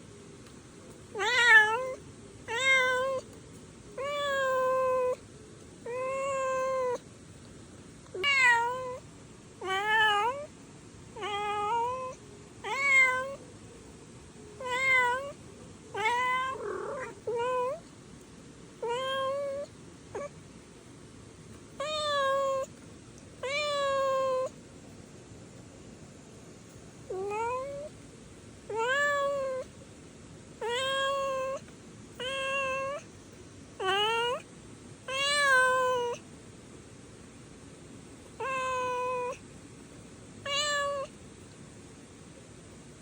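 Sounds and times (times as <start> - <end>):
kitten meowing: 1.2 - 3.2, 4.0 - 5.2, 5.9 - 7.0, 8.2 - 9.0, 9.6 - 10.5, 11.2 - 13.4, 14.6 - 15.4, 16.0 - 17.8, 18.8 - 20.3, 21.8 - 22.7, 23.4 - 24.5, 27.1 - 27.9, 28.7 - 29.6, 30.6 - 31.6, 32.2 - 33.0, 33.8 - 34.4, 35.1 - 36.2, 38.4 - 39.4, 40.4 - 41.1.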